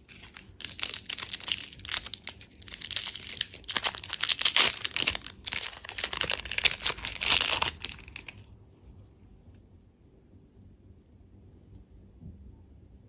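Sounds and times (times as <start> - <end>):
plastic wrapper crinkling: 0.0 - 8.5.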